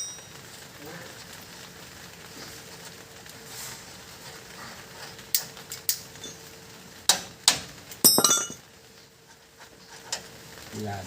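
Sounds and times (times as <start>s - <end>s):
metal tools clinking: 8.0s - 8.6s.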